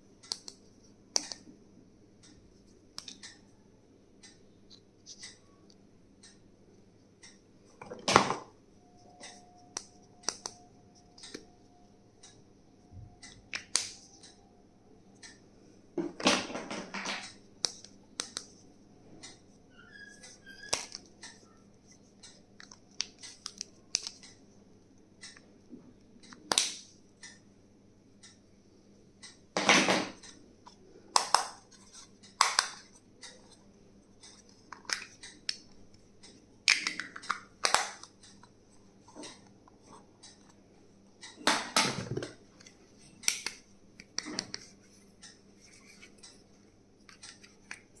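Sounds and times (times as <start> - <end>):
plastic stationery clicks and taps: 31.2 - 31.6, 36.7 - 38.2.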